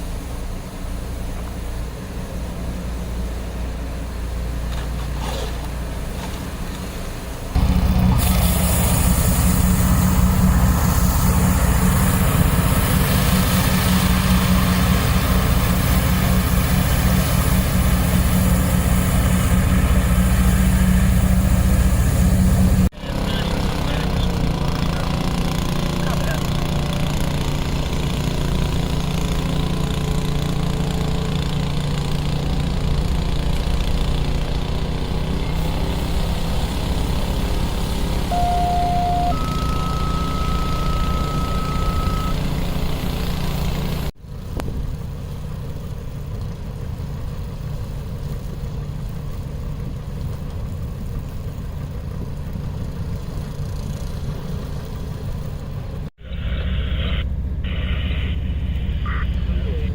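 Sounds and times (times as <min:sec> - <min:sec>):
street traffic rumble: 0:00.0 - 0:59.9
vehicle engine running: 0:00.0 - 0:59.9
electronic beeps: 0:38.3 - 0:42.4, 0:56.2 - 0:59.9.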